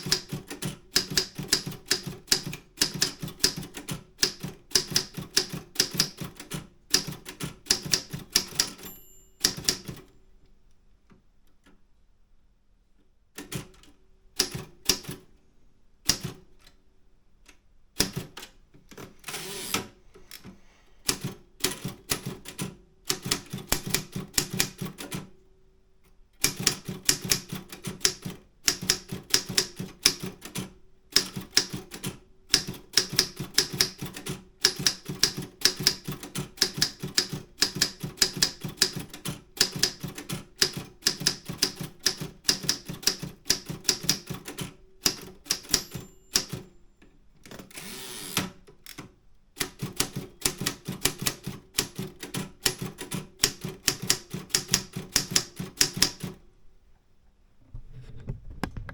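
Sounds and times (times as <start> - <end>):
typewriter typebar strikes: 0.0 - 10.0, 31.2 - 44.4, 45.0 - 46.7, 49.6 - 56.3
typewriter rasping sound: 19.2 - 19.9, 47.7 - 48.6.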